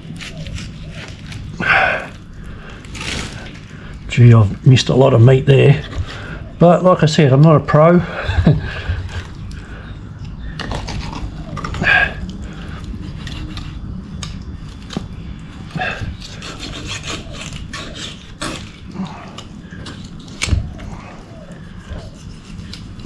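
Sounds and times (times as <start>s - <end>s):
knife sawing through fish: 15.8s - 23.0s.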